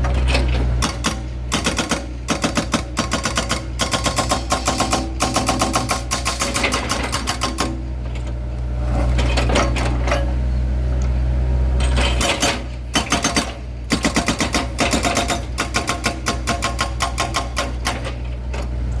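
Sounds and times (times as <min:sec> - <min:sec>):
hydraulic breaker hammering concrete: 0:00.8 - 0:07.8, 0:11.9 - 0:18.2.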